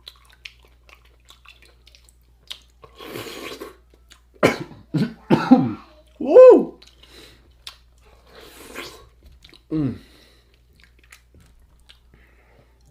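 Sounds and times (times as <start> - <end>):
wet slurping: 1.3 - 3.8, 8.2 - 9.6
throat sounds: 9.6 - 10.2.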